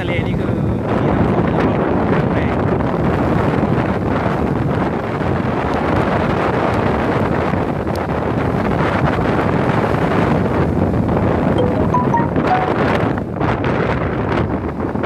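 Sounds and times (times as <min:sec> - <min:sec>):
wind buffeting microphone: 0:00.0 - 0:11.5.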